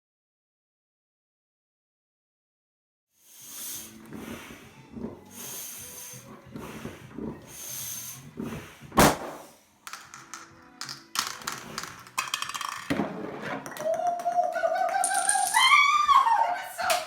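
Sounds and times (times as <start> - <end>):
balloon being inflated hissing: 3.2 - 9.6
balloon bursting bang: 9.0 - 9.6.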